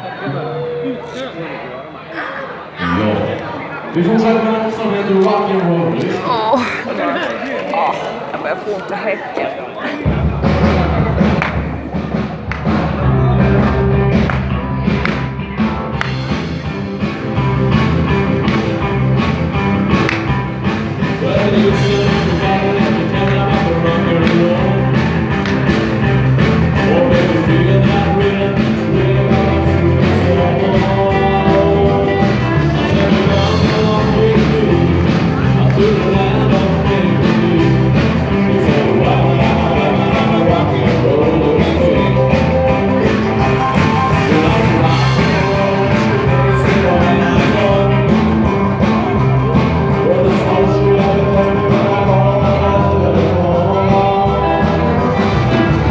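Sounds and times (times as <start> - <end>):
live rock and roll band: 9.8 - 55.9
person singing: 20.6 - 55.9.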